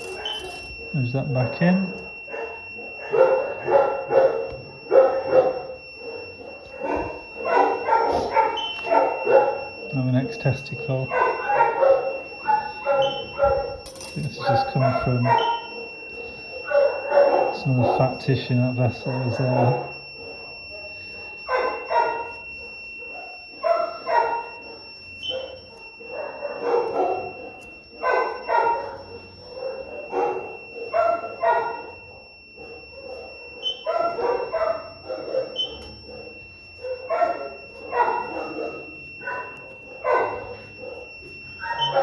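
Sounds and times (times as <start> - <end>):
dog barking: 1.8 - 10.0, 11.0 - 18.3, 19.0 - 42.0
high-pitched electronic tone: 32.1 - 42.0.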